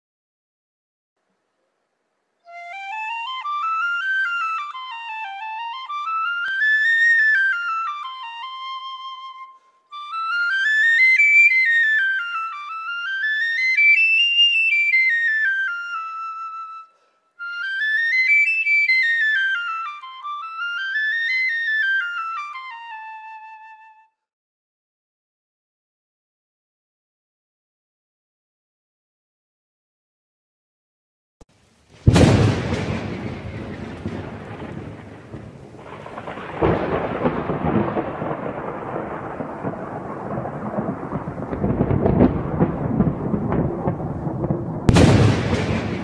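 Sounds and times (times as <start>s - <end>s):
flute-like tone playing scales: 2.4s - 24.3s.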